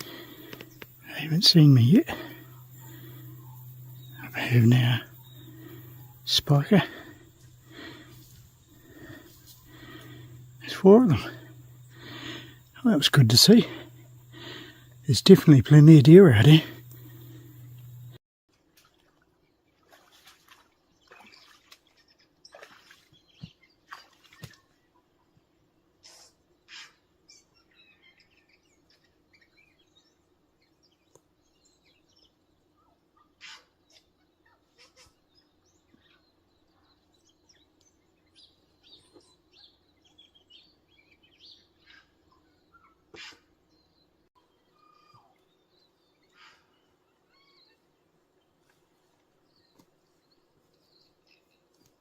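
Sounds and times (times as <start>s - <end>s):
bird chirps: 0.0s - 18.2s
faint birdsong: 0.0s - 18.2s, 19.0s - 52.0s.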